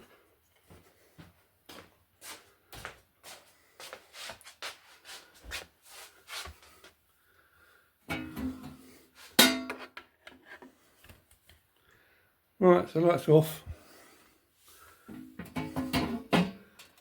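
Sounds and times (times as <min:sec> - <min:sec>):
footsteps walking: 0:00.0 - 0:06.9.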